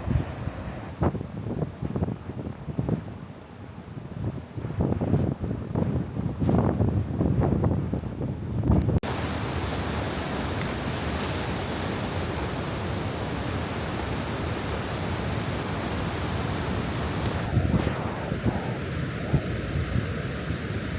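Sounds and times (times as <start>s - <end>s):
wind buffeting microphone: 0.0s - 20.9s
ocean surf washing on shore: 9.0s - 17.6s.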